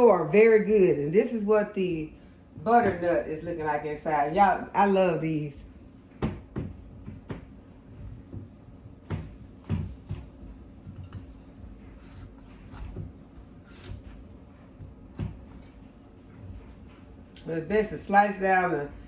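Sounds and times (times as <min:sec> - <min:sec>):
knife cutting on cutting board: 0:11.9 - 0:14.2.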